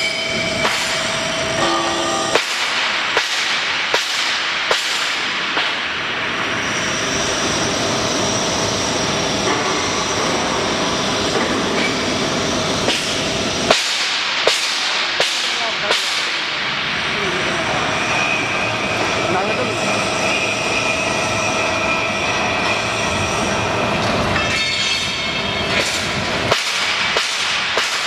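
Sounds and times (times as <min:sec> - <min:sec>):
thin high whine: 0:00.0 - 0:02.7, 0:16.7 - 0:26.5
industrial machinery running: 0:00.0 - 0:28.0.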